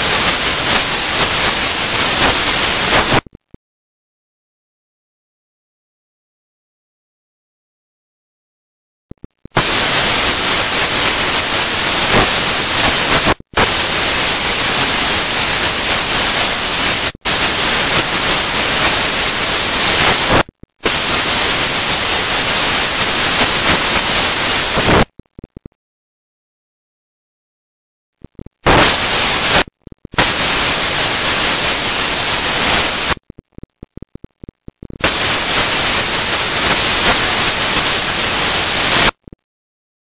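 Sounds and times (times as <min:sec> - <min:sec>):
loud static hiss: 0:00.0 - 0:03.5, 0:09.1 - 0:25.8, 0:28.2 - 0:39.4.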